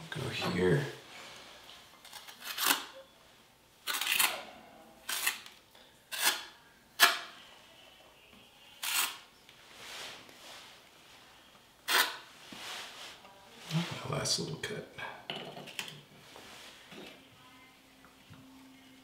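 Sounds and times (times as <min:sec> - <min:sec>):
tiles clicking and scraping: 0:05.0 - 0:07.3, 0:11.9 - 0:12.3.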